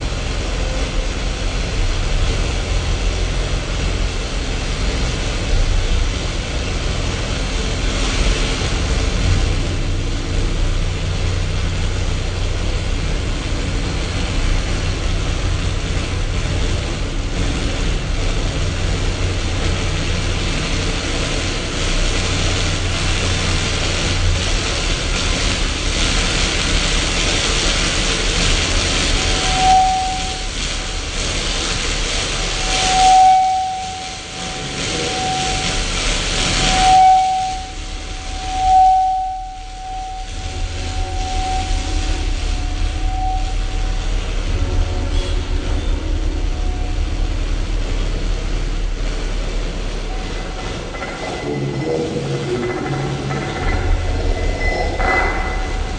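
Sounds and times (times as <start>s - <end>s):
dense hiss: 0.0s - 55.9s
low drone: 0.0s - 55.9s
faint held tones: 29.3s - 30.5s, 32.6s - 49.0s, 49.6s - 55.9s.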